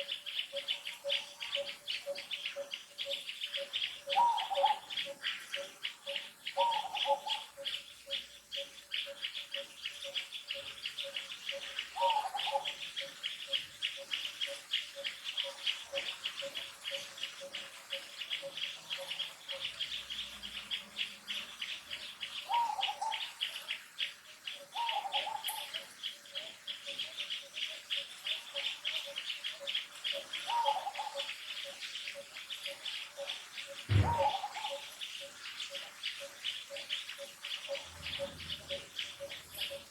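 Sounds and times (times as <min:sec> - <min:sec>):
insects trilling: 0:00.0 - 0:39.9
slower pulsing chirp: 0:32.6 - 0:35.0, 0:36.7 - 0:39.9
low thump: 0:33.9 - 0:34.3
short falling call: 0:33.9 - 0:34.5.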